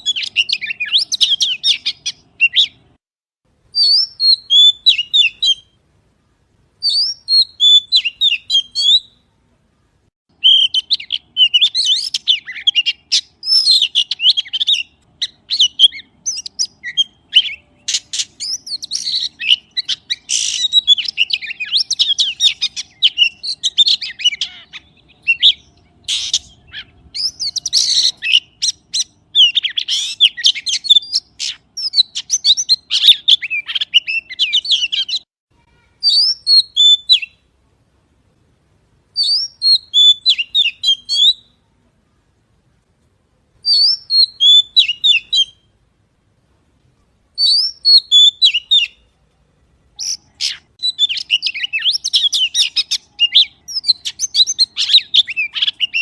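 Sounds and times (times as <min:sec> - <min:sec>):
magpie chirps and squawks: 0:00.0 - 0:02.8, 0:10.4 - 0:35.2, 0:35.8 - 0:37.4, 0:43.6 - 0:45.6, 0:47.4 - 0:49.0, 0:50.0 - 0:56.0.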